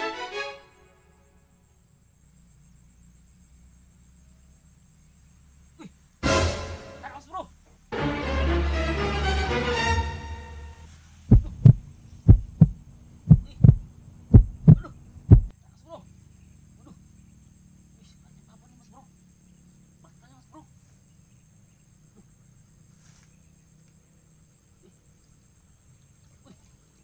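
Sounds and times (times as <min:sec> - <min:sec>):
deep thumps in pairs: 0:11.3 - 0:15.5.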